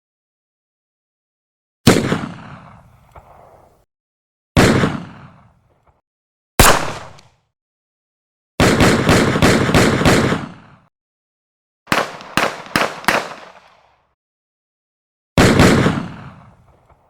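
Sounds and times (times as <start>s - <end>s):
single gunshots with echo: 1.9s - 3.7s, 4.6s - 5.7s, 6.6s - 7.3s, 8.6s - 10.9s, 11.9s - 14.0s, 15.4s - 17.0s
automatic gunfire burst: 6.6s - 7.2s, 11.9s - 13.7s.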